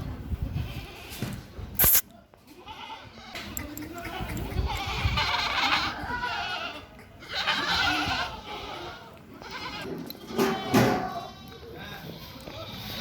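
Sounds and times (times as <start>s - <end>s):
goats bleating: 4.0s - 13.0s.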